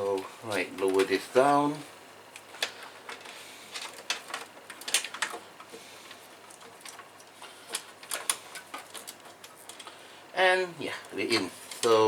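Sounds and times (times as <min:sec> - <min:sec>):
fan frame clicking and scraping: 0:02.4 - 0:10.1.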